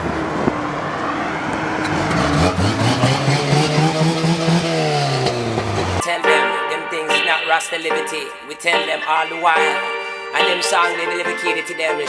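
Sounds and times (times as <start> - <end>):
truck engine accelerating: 0.0 - 6.0.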